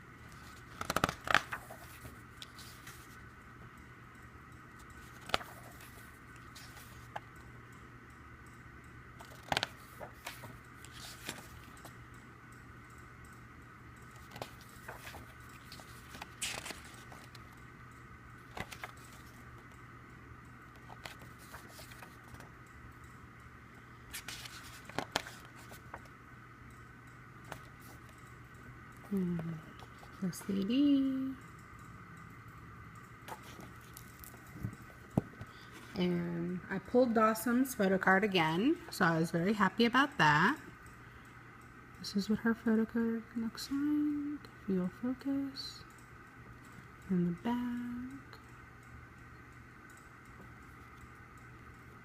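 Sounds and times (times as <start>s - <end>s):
faint steady hum: 0.0s - 52.0s
paper and plastic being handled: 14.2s - 17.6s, 18.5s - 19.4s, 20.8s - 22.5s, 24.1s - 26.1s.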